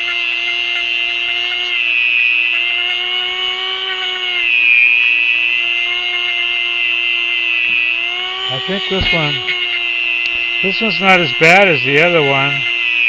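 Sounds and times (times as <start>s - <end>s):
rotary tool whining on metal: 0.0s - 13.0s.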